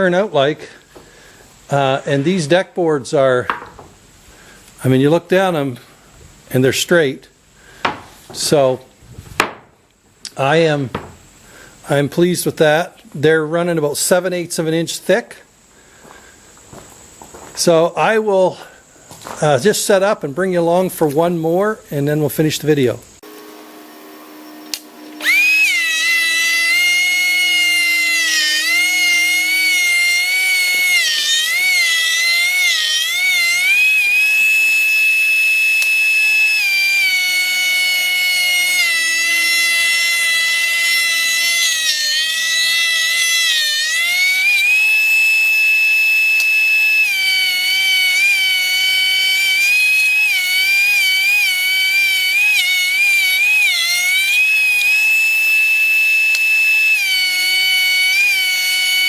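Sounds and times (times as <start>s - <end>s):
power tool motor whining: 23.2s - 59.0s.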